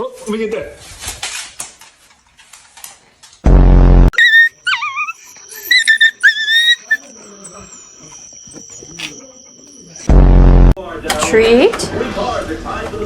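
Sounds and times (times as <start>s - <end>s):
dog whining: 4.1s - 10.1s.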